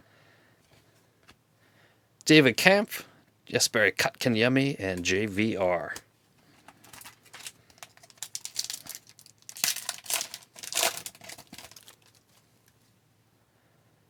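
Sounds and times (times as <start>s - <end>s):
foil wrapper tearing and crinkling: 6.8s - 12.4s.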